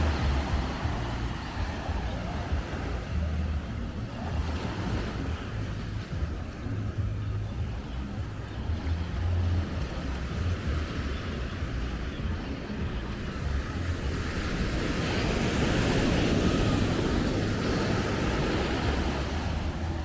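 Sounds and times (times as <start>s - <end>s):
sea waves washing onto beach: 0.0s - 20.0s
wind buffeting microphone: 0.0s - 20.0s.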